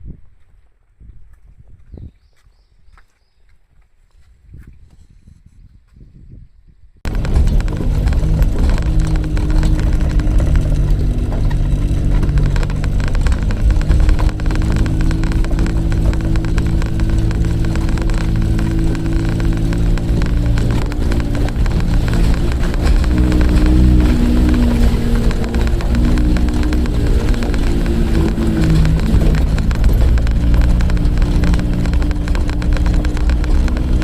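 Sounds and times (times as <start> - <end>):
car engine running: 7.1 - 34.0.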